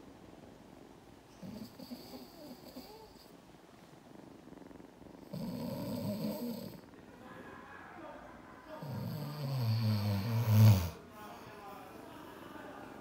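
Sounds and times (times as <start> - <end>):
man snoring: 5.2 - 6.8, 8.8 - 11.0.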